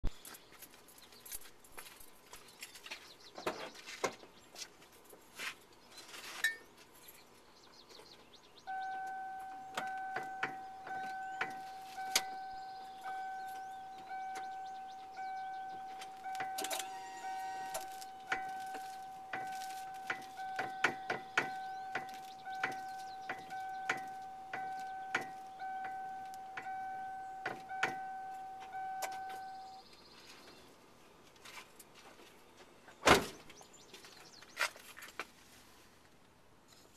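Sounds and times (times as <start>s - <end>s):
car warning chime dinging: 8.6s - 29.9s
steering clicks and knocks: 8.7s - 29.8s.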